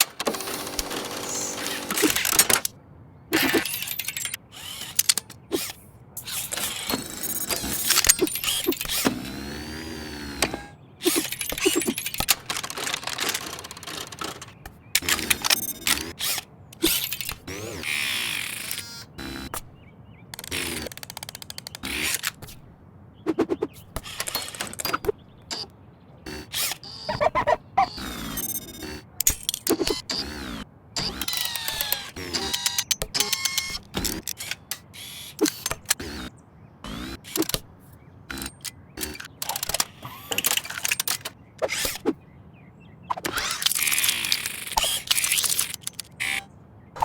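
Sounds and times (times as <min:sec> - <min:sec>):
mechanical clicks and clunks: 0:00.0 - 0:02.8, 0:03.4 - 0:19.7, 0:23.6 - 0:25.7, 0:26.3 - 0:37.7, 0:38.3 - 0:42.0
whirring whines: 0:03.4 - 0:19.7, 0:26.3 - 0:37.6.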